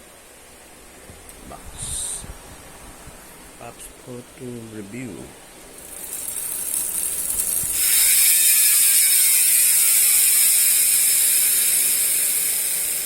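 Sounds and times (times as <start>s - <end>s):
freehub ratchet buzzing: 5.7s - 13.0s.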